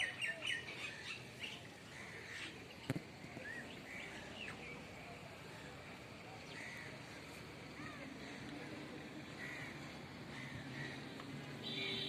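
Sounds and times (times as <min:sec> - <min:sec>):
bird chirps and calls: 0:00.0 - 0:02.8
steady background hiss: 0:00.0 - 0:12.0.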